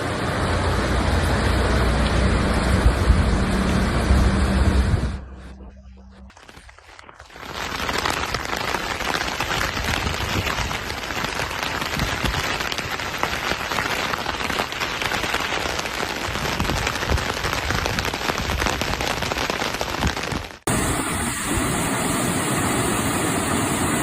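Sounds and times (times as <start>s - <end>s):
heavy rain pouring: 0.0s - 5.2s, 6.3s - 24.0s.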